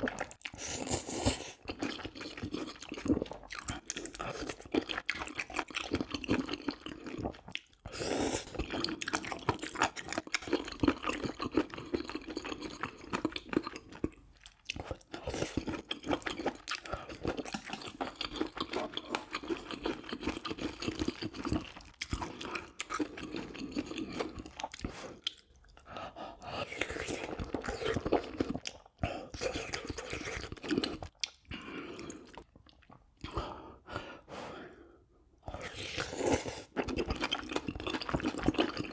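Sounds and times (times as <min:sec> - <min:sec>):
person chewing food: 0:00.0 - 0:34.2, 0:35.4 - 0:38.9
food crunching: 0:08.6 - 0:25.8, 0:35.6 - 0:38.9
wet mouth sounds: 0:12.4 - 0:25.8.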